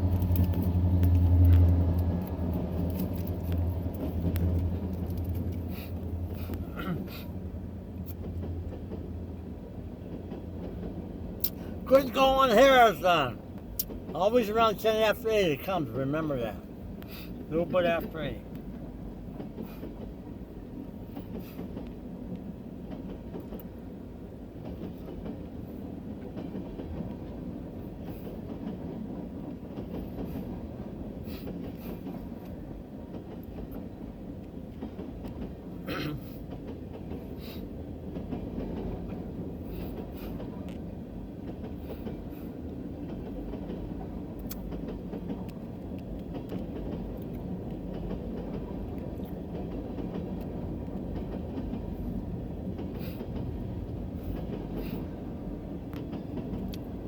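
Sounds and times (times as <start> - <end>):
freight train rumble: 0.0 - 57.0
wheels clacking over rail joints: 21.0 - 22.0, 24.6 - 57.0.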